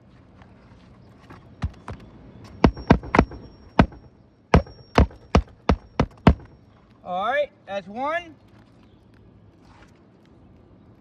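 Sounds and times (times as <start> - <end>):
hammer striking metal tool: 2.6 - 6.6.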